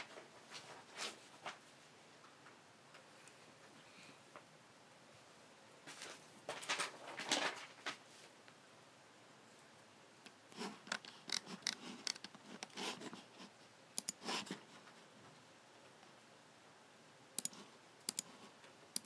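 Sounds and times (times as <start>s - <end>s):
computer mouse clicks: 10.2s - 12.8s, 14.0s - 14.3s, 17.4s - 19.0s.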